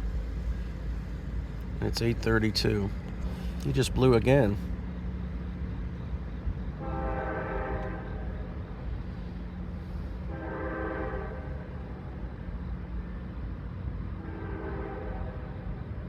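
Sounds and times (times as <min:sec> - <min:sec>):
distant locomotive air horn: 0:06.8 - 0:08.6, 0:09.8 - 0:11.9, 0:14.1 - 0:15.8.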